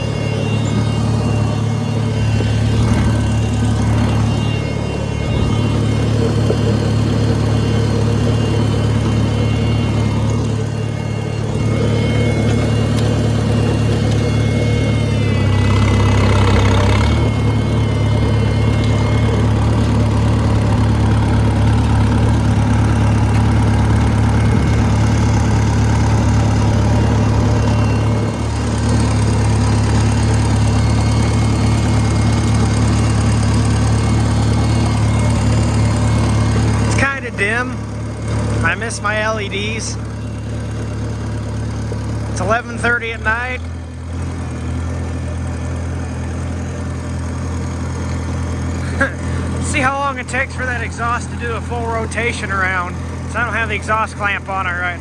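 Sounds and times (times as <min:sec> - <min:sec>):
tractor engine idling: 0:00.0 - 0:55.0.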